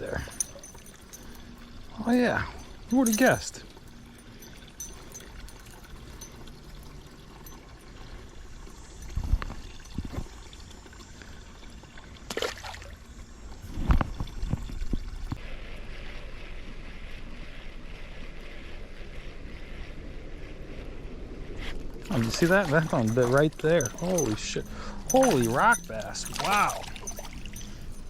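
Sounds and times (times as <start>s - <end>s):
river water running: 0.0s - 13.3s, 21.7s - 28.0s.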